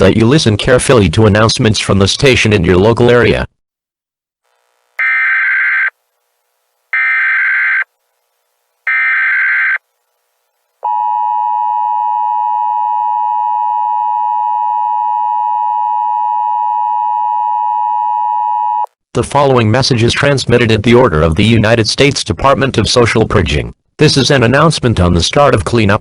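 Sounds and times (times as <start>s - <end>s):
data tone bursts: 5.0s - 6.0s, 7.0s - 7.9s, 8.9s - 9.8s.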